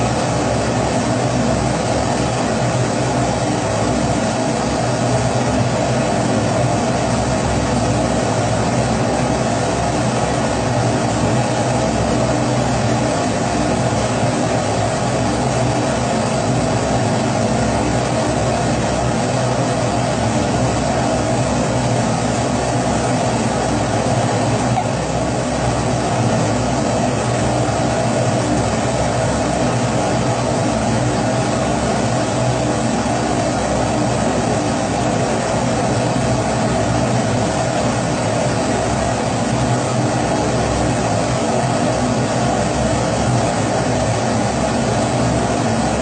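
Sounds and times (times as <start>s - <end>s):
pressure stove burner rushing: 0.0s - 46.0s.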